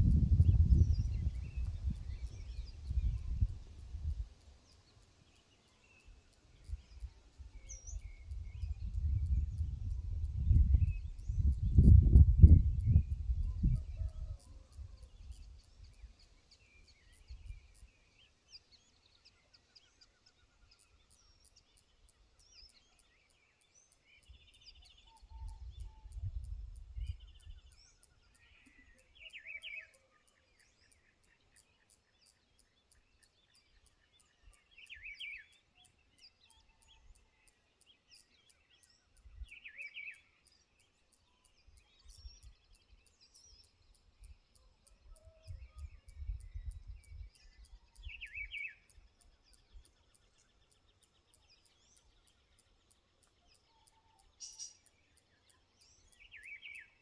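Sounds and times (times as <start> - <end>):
birds chirping: 0.0 - 23.1.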